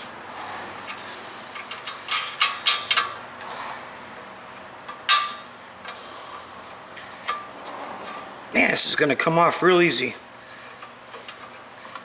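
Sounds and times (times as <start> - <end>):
metal hardware clinking: 0.8 - 3.2, 4.9 - 6.0.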